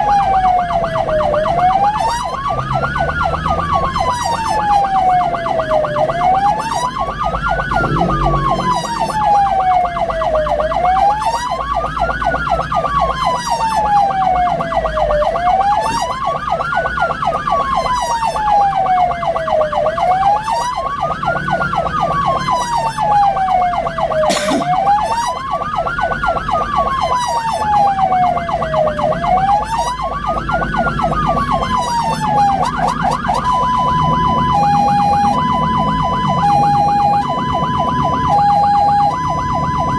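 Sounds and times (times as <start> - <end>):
ambulance siren wailing: 0.0 - 39.9
two-tone hi-lo siren: 0.0 - 39.9
vehicle rumble: 0.0 - 39.9.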